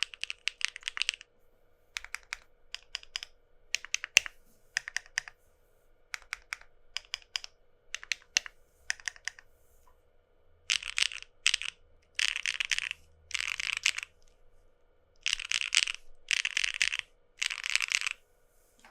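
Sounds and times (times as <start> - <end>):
mechanical keyboard typing: 0.0 - 1.3, 2.0 - 5.4, 6.2 - 9.4, 10.7 - 14.3, 15.2 - 18.2.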